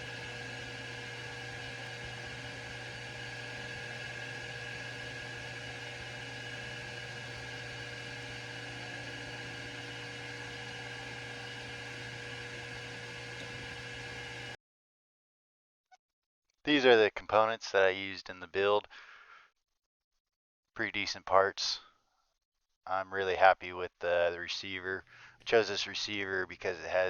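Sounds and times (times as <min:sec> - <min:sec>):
metal lathe humming and whining: 0:00.0 - 0:14.6.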